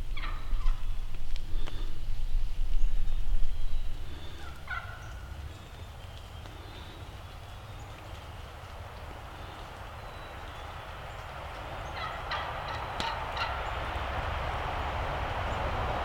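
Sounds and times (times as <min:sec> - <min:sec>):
low rumble: 0:00.0 - 0:04.7
turkey gobbling: 0:00.1 - 0:00.9, 0:04.1 - 0:05.6, 0:11.2 - 0:13.9.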